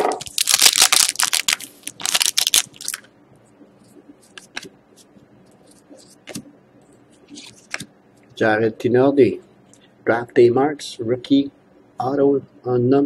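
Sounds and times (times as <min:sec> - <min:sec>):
card pack wrapper tearing and crinkling: 0:00.0 - 0:03.1.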